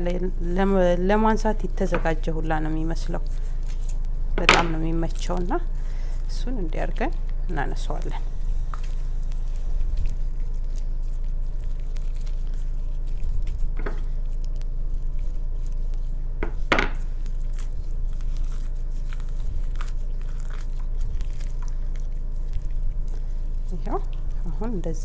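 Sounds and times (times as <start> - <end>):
low electrical hum: 0.0 - 25.0
wet tearing of raw meat: 8.6 - 16.2, 17.0 - 24.4.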